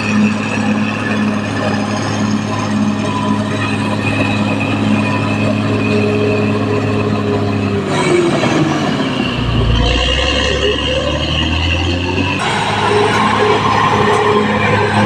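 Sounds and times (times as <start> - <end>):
bulldozer diesel engine: 0.0 - 15.0
metallic track noise: 0.0 - 15.0.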